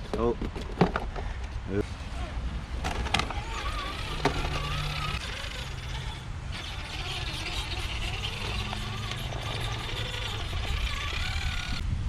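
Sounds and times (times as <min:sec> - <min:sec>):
outdoor background noise: 0:00.0 - 0:12.0
electric motor whining: 0:02.9 - 0:11.8.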